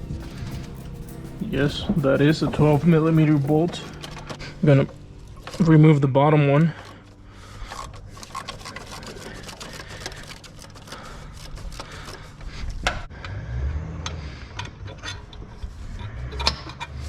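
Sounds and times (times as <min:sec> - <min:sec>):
ratchet clicking: 0:07.7 - 0:12.8.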